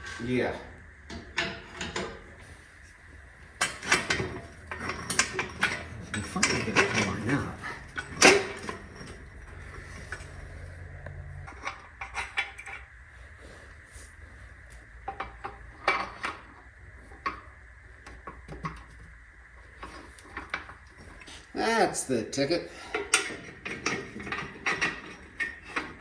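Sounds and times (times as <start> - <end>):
steel equipment clanking: 0.0 - 2.5, 3.6 - 12.8, 22.7 - 26.0
low steady hum: 0.0 - 26.0.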